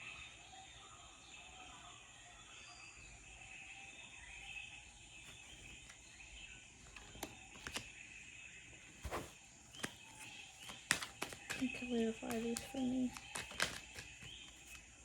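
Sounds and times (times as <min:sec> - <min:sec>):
sharp clicks: 0:09.7 - 0:14.9.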